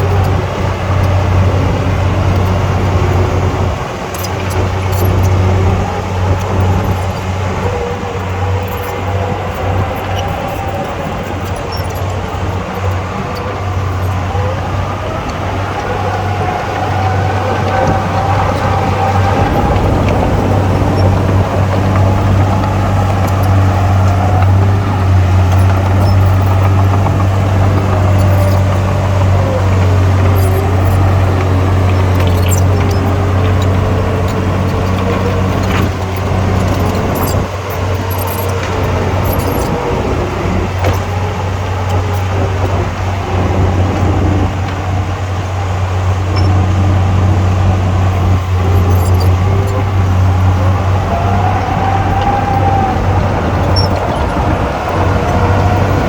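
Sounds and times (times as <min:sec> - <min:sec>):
heavy diesel engine droning: 0:00.0 - 0:56.0
short metallic clicks: 0:17.7 - 0:39.9.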